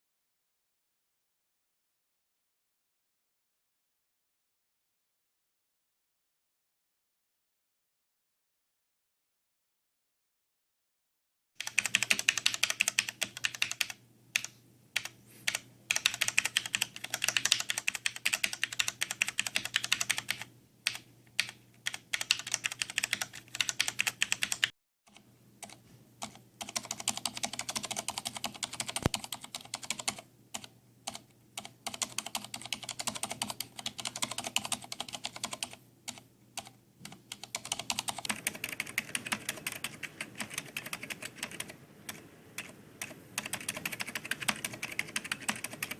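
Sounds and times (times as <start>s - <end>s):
mechanical keyboard typing: 11.6s - 45.9s.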